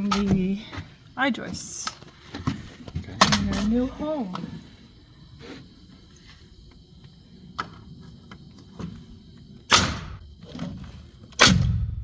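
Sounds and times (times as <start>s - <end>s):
nail gun firing: 9.7s - 10.2s, 11.4s - 12.0s.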